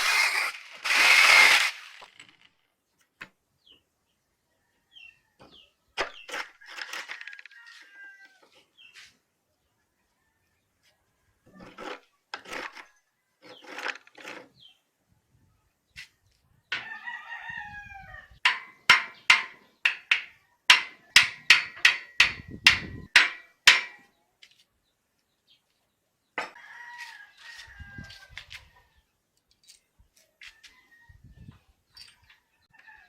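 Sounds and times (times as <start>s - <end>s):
rooster crowing: 16.8s - 18.4s, 26.5s - 28.5s.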